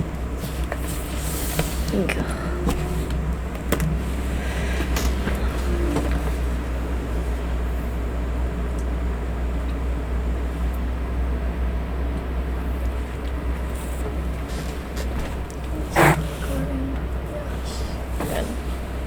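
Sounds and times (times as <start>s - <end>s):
electric fan humming: 0.0s - 19.0s.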